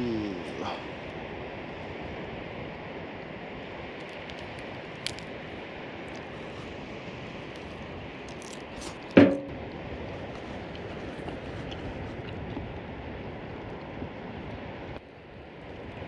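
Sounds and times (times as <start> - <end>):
campfire crackling: 0.0 - 16.0
sharp loud knock: 9.2 - 9.5.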